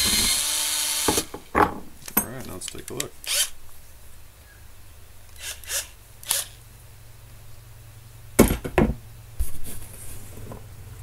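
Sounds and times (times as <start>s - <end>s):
short rustle: 9.4s - 10.6s.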